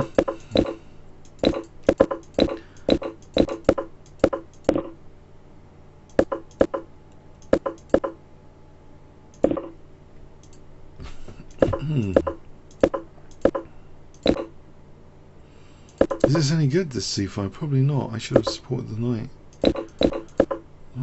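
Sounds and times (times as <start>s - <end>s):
computer mouse clicks: 0.0s - 4.9s, 6.1s - 8.2s, 9.3s - 9.7s, 10.4s - 10.6s, 11.5s - 14.5s, 15.9s - 16.4s, 19.5s - 20.6s.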